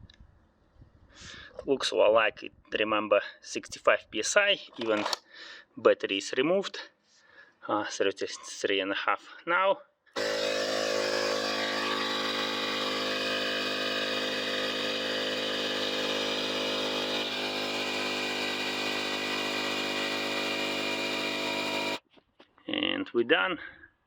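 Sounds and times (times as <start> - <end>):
air compressor running: 10.2 - 22.0.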